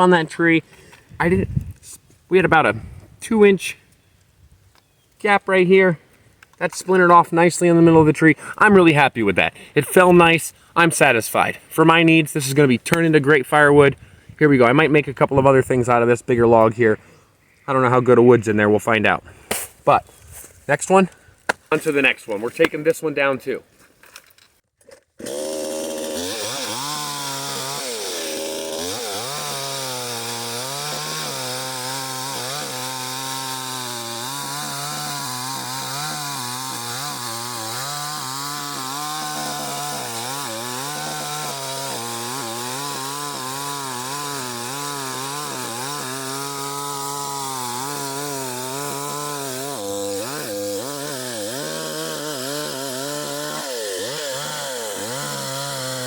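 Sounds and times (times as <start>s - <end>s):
chainsaw running: 25.2s - 56.0s.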